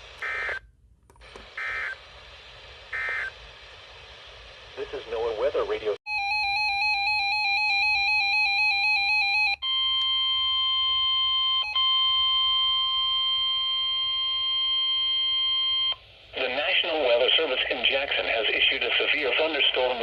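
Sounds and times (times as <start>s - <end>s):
steady high alarm tone: 6.1s - 16.0s.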